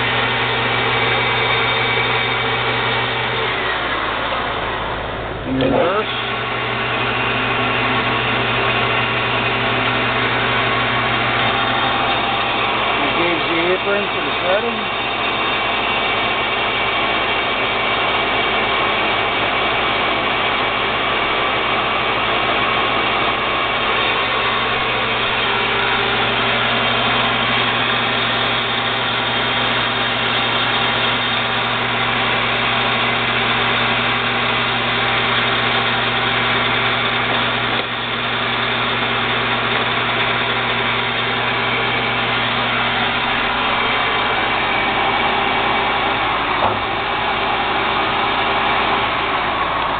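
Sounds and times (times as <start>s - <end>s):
metal lathe humming: 0.0s - 49.9s.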